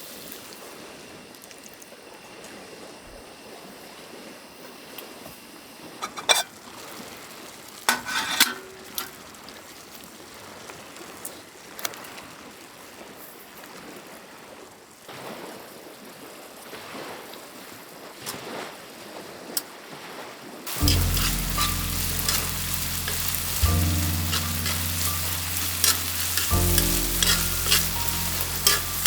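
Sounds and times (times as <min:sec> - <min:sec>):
utensils clinking on cookware: 0:07.9 - 0:09.1, 0:20.7 - 0:29.0
soft sizzling hiss: 0:20.7 - 0:29.0.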